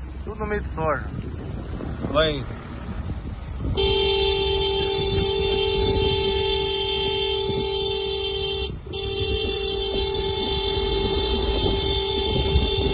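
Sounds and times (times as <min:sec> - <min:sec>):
motorcycle horn blaring: 0:03.7 - 0:12.9.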